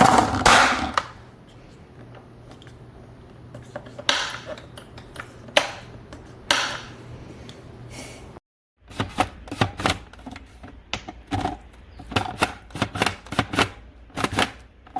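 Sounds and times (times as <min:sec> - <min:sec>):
hard objects clicking and knocking: 0:09.0 - 0:14.9.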